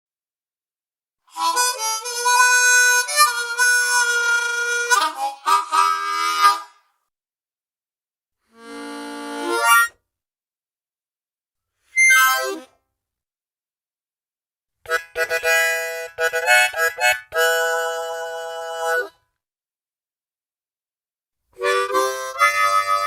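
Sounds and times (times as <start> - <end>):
harmonica playing: 1.3 - 6.9, 8.5 - 10.0, 11.9 - 12.7, 14.8 - 19.2, 21.6 - 23.0.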